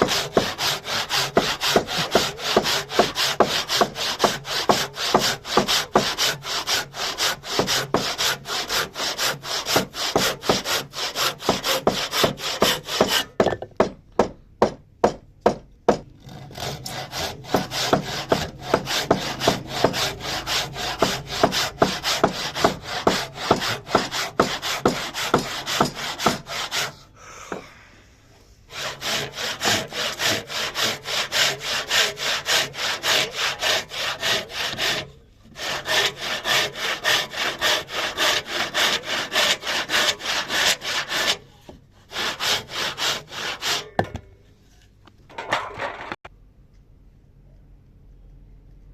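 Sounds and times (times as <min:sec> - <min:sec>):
hand saw cutting wood: 0:00.0 - 0:13.5, 0:16.0 - 0:27.6, 0:28.7 - 0:44.0.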